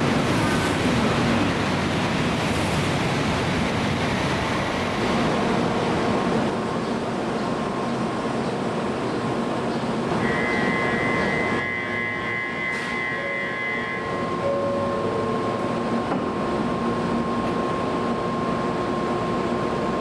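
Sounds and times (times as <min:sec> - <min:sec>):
train passing at high speed: 0:00.0 - 0:20.0
high-pitched tone: 0:10.2 - 0:15.7.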